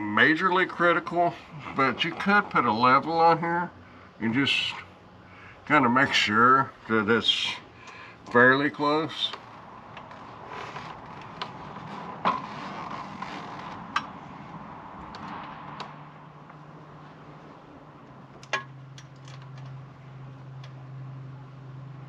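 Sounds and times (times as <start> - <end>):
steady low hum: 0.0 - 22.0
hardware clicks and knocks: 18.4 - 19.8.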